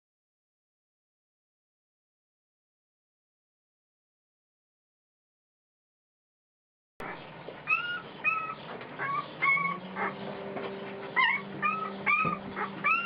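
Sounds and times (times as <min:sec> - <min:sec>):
puppies whimpering and squeaking: 0:07.0 - 0:13.0.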